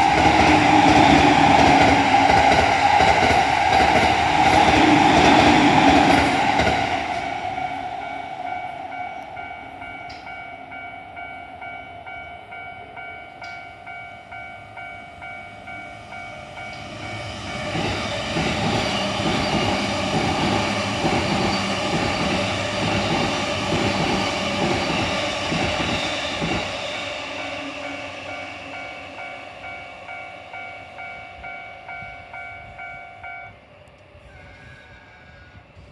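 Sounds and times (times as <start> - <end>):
train wheels clattering: 0.0 - 7.5, 16.6 - 27.7
train passing: 0.0 - 35.9
level crossing warning bell: 3.8 - 33.7.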